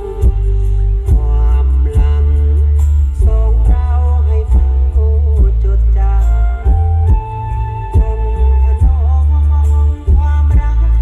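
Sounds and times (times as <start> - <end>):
loud bass-heavy music: 0.0 - 11.0.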